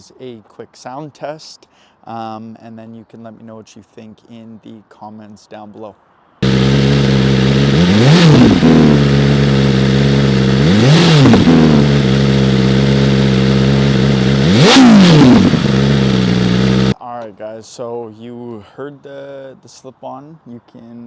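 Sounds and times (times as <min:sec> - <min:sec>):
motorcycle engine idling and revving: 0:06.4 - 0:17.0.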